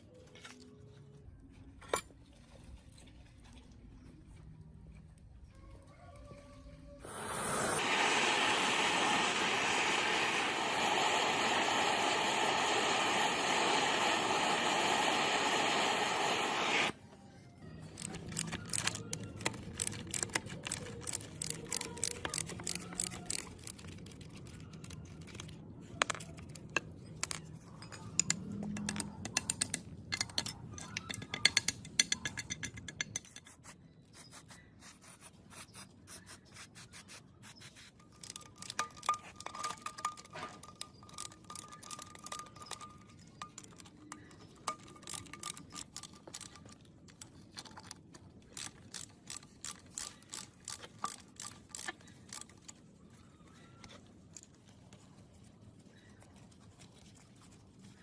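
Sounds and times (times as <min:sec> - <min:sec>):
metal parts clinking and scraping: 0:17.9 - 0:33.6, 0:37.9 - 0:52.8.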